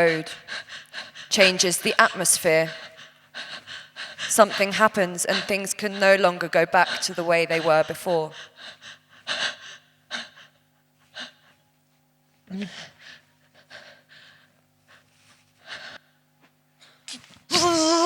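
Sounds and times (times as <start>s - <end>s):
faint steady hum: 0.0s - 18.0s
falling groan: 17.5s - 18.0s
loud wavering pitched cry: 17.5s - 18.0s.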